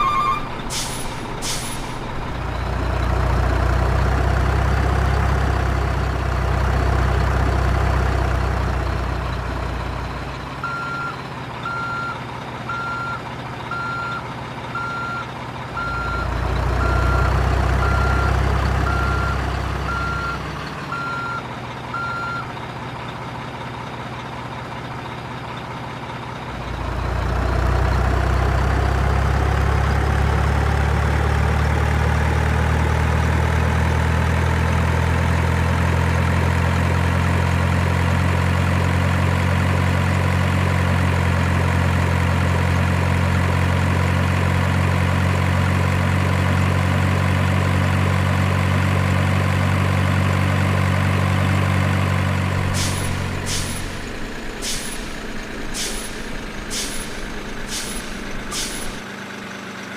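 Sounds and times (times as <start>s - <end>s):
reversing alarm beeping: 0.0s - 1.0s, 10.6s - 14.2s, 14.8s - 21.4s, 22.0s - 22.5s
truck engine running: 0.0s - 59.9s.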